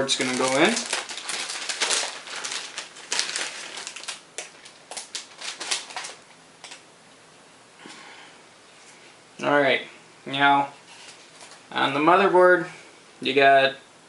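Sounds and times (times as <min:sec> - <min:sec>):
crinkling rustles: 0:00.0 - 0:06.8, 0:10.7 - 0:11.8.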